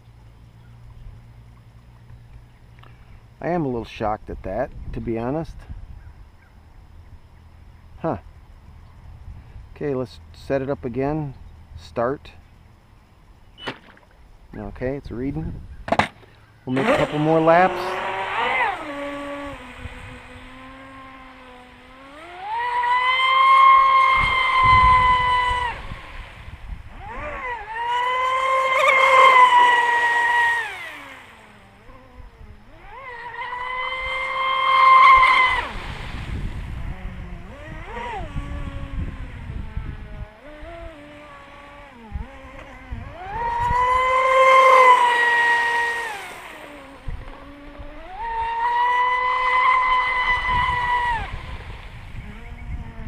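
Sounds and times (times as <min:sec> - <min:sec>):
electric motor whining: 0:16.7 - 0:53.0.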